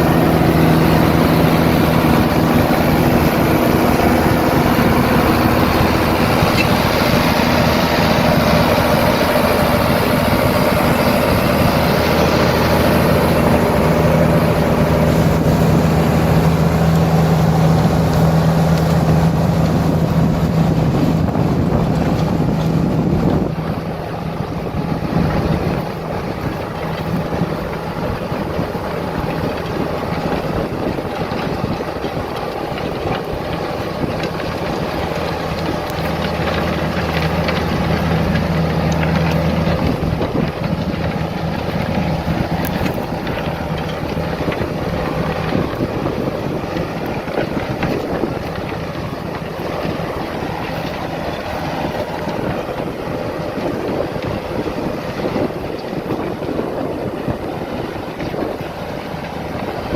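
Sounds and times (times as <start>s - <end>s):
tractor engine running: 0.0s - 59.9s.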